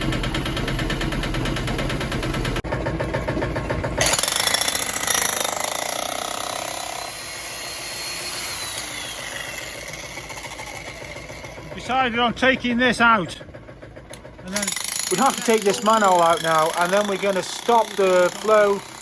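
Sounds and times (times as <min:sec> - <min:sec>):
digger engine running: 0:00.0 - 0:19.0
harsh scraping and clattering: 0:08.5 - 0:19.0.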